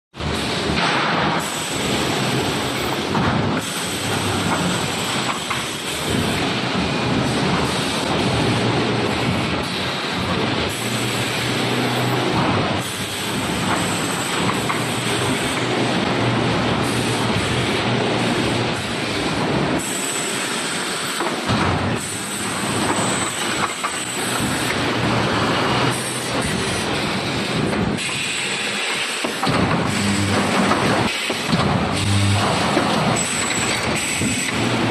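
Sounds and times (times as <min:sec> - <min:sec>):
welding machine clattering: 0:00.2 - 0:34.9
machine hiss: 0:00.3 - 0:34.9.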